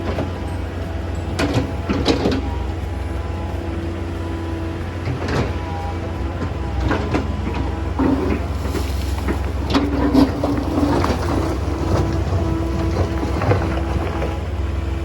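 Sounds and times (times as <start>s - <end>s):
excavator diesel engine running: 0.0s - 15.0s
stones clattering in steel bucket: 8.0s - 12.2s.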